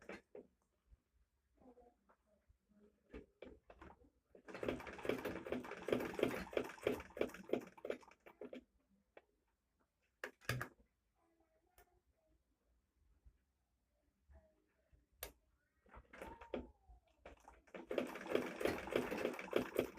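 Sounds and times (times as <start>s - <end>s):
sewing machine stitching: 4.4s - 8.6s, 17.2s - 19.9s.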